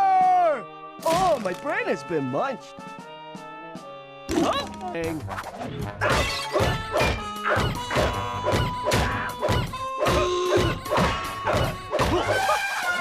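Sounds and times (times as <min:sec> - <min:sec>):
cartoon whacks and crashes: 0:06.0 - 0:12.4.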